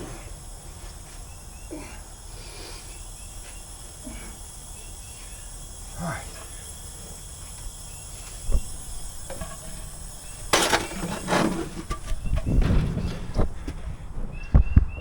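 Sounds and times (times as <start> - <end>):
insects chirping: 0.0 - 15.0
metal parts knocking and clattering: 9.2 - 13.8.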